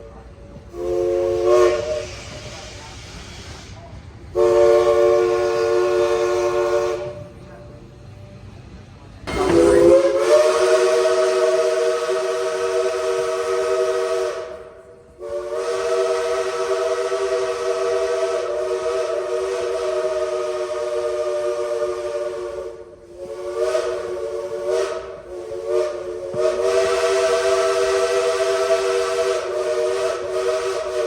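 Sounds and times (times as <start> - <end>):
steam hiss: 0.0 - 31.0
three-chime steam whistle: 0.7 - 2.6, 9.3 - 31.0.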